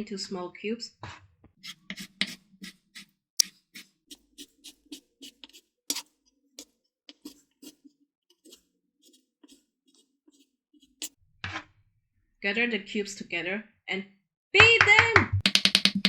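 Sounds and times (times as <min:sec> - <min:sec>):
knife chopping on cutting board: 0:01.6 - 0:02.8, 0:03.4 - 0:06.1.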